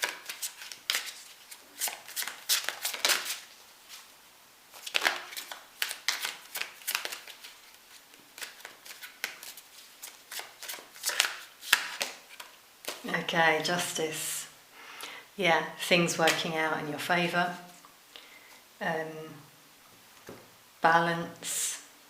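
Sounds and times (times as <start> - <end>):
cards being shuffled: 0.0 - 4.1, 4.7 - 13.0.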